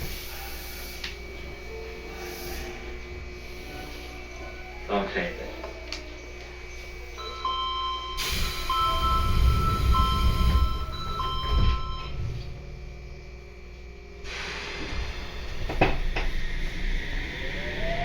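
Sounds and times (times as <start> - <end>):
two-note door chime: 7.2 - 12.2
low rumble: 8.2 - 18.0.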